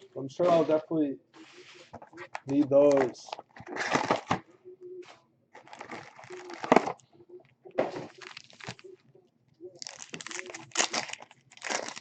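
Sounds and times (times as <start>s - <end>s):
foil wrappers crinkling: 5.5s - 7.0s, 7.8s - 8.9s, 9.8s - 12.0s.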